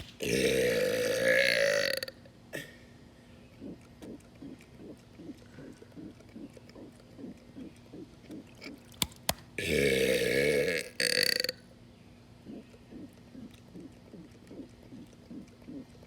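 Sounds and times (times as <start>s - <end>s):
sharp clicks: 0.0s - 0.3s, 9.0s - 9.5s
man burping loudly: 0.2s - 2.8s, 9.6s - 11.6s.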